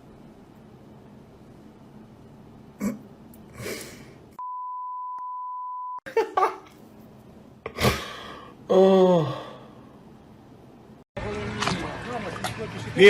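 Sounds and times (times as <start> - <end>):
censor bleep: 4.4 - 6.0.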